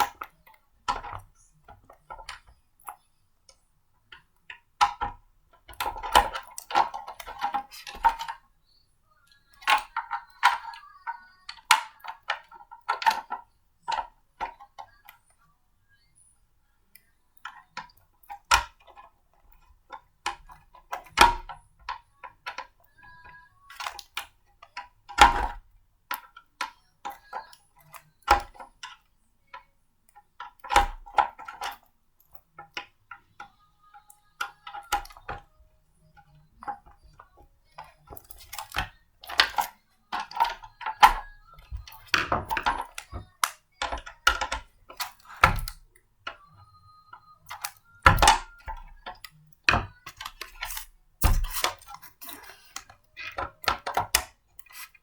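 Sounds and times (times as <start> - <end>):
blender parts clicking and knocking: 17.4 - 55.0.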